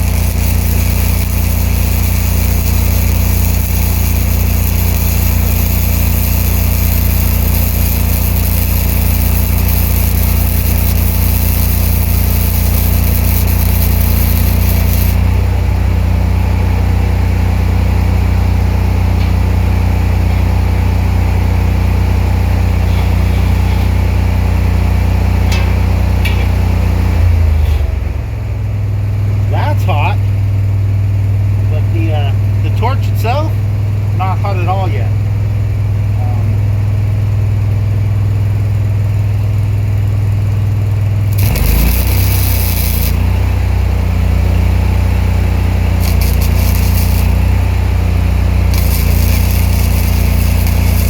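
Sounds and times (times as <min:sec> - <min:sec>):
welding arc hissing: 0:00.0 - 0:15.7, 0:21.8 - 0:27.3, 0:41.2 - 0:51.0
welder engine running: 0:00.0 - 0:51.0.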